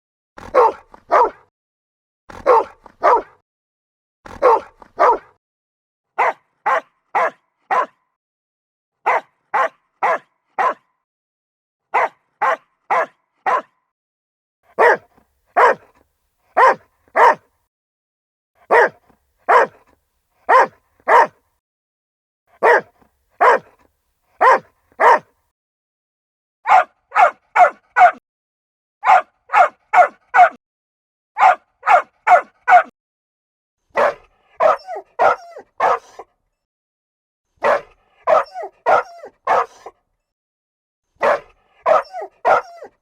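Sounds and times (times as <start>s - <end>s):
dog yipping: 0.4s - 1.3s, 2.4s - 3.3s, 4.3s - 5.2s, 6.2s - 7.9s, 9.1s - 10.8s, 12.0s - 13.7s, 14.8s - 15.0s, 15.6s - 15.8s, 16.6s - 17.4s, 18.7s - 18.9s, 19.5s - 19.8s, 20.5s - 21.3s, 22.6s - 23.7s, 24.4s - 25.2s, 26.7s - 28.2s, 29.0s - 30.6s, 31.4s - 32.9s, 34.0s - 36.2s, 37.6s - 39.9s, 41.2s - 43.0s
dog barking: 0.4s - 1.5s, 2.3s - 3.4s, 4.3s - 5.4s, 6.2s - 8.1s, 9.0s - 11.0s, 11.9s - 13.8s, 14.7s - 17.5s, 18.6s - 21.4s, 22.5s - 23.8s, 24.4s - 25.3s, 26.6s - 28.2s, 29.0s - 30.6s, 31.4s - 33.0s, 33.9s - 36.3s, 37.6s - 40.0s, 41.2s - 43.0s.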